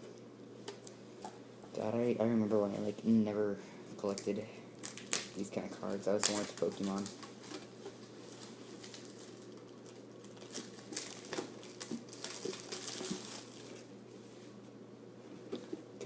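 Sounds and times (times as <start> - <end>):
faint steady hum: 0.0 - 16.0
plastic wrapping crinkling: 4.0 - 13.9.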